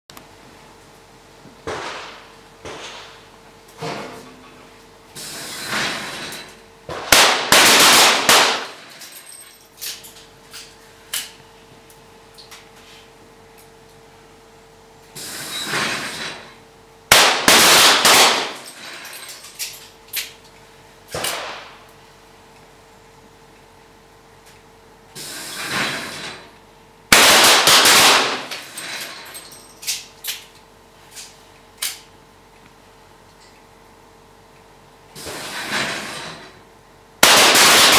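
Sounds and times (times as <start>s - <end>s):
hiss: 5.2s - 6.2s, 15.2s - 16.2s, 25.2s - 26.3s, 35.2s - 36.4s
pistol shots: 6.9s - 8.8s, 17.1s - 18.6s, 21.2s - 21.8s, 27.1s - 28.5s, 37.2s - 37.9s.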